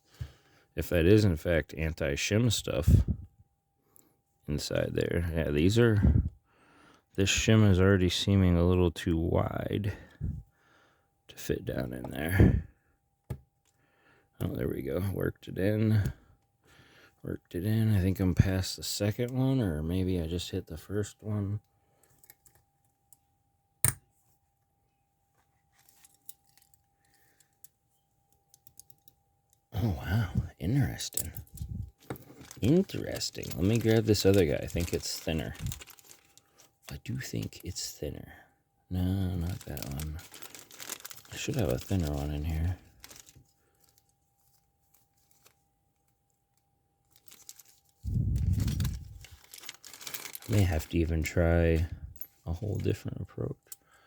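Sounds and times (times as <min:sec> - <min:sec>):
packaging rustling: 0:30.9 - 0:37.7, 0:39.3 - 0:45.6, 0:47.1 - 0:51.9.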